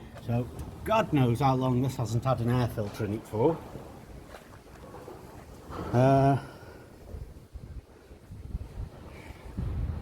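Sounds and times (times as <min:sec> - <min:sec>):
wind buffeting microphone: 0:03.5 - 0:10.0.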